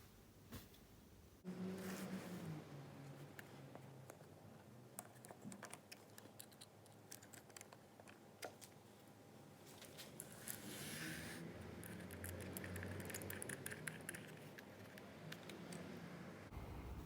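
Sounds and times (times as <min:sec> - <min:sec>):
faint low hum: 0:11.4 - 0:17.0.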